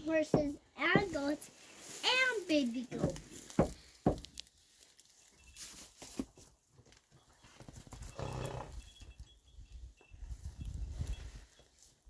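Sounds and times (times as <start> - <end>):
hooves knocking on ground: 0.0 - 8.5.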